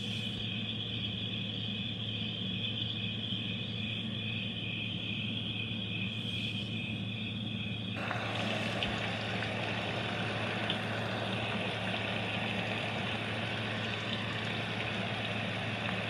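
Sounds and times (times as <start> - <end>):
low hum: 2.6 - 16.0
radio static hiss: 8.0 - 16.0.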